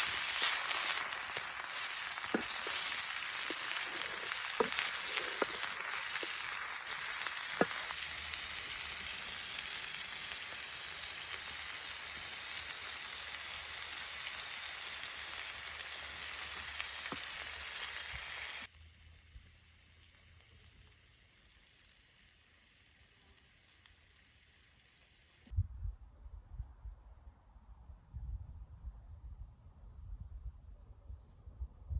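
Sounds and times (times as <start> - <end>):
food sizzling in hot oil: 0.0 - 25.5
faint outdoor background: 0.0 - 31.9.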